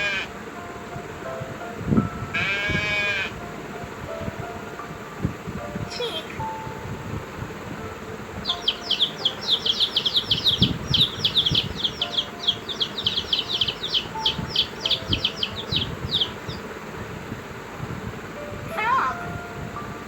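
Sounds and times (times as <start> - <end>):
animal chirping: 5.9 - 6.5, 8.4 - 16.7.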